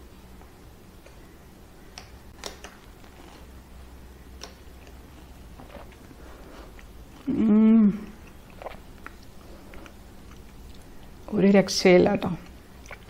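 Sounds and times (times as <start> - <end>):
quiet eating sounds: 0.3 - 13.0
woman humming mmm: 7.2 - 8.3.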